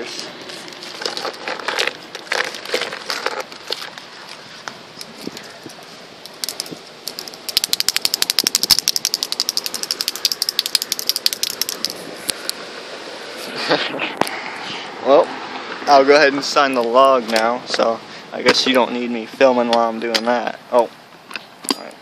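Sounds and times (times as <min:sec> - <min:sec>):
small items rustling and clicking: 0:00.4 - 0:12.6
fast run of sharp clicks: 0:05.0 - 0:12.6.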